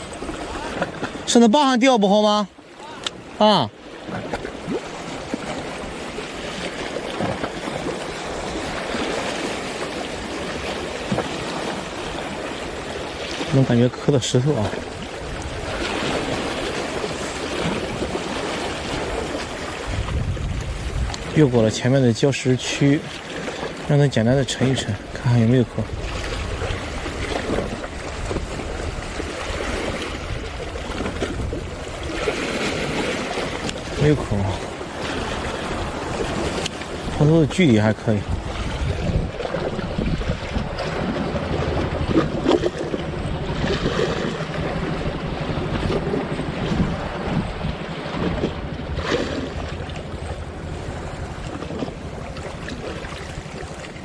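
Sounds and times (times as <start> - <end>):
waves washing over rocks: 0.0 - 54.0
wind rumbling on microphone: 14.4 - 22.2, 23.0 - 54.0.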